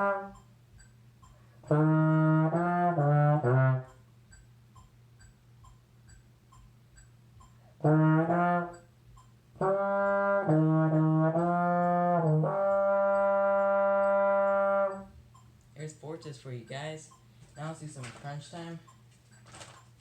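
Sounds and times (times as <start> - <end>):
trombone playing: 0.0 - 0.4, 1.6 - 4.0, 7.8 - 8.9, 9.6 - 15.1
faint metronome ticks: 0.0 - 20.0.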